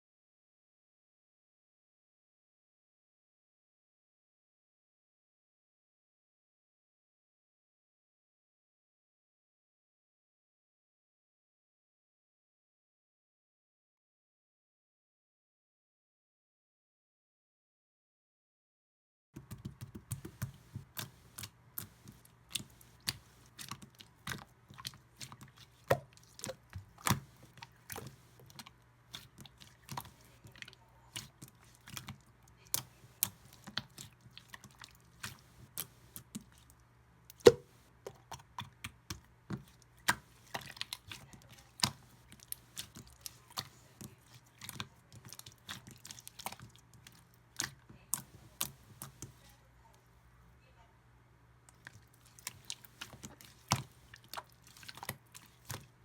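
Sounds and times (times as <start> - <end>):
faint low hum: 19.4 - 56.0
slime clicking and popping: 37.3 - 39.2.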